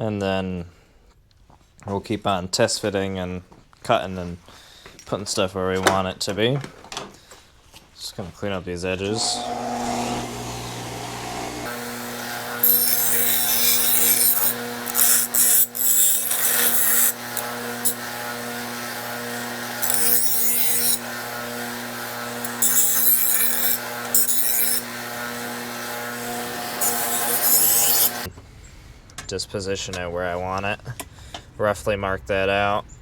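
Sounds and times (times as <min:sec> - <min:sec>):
power tool humming: 0:09.0 - 0:28.3
grinding hiss: 0:09.1 - 0:28.3.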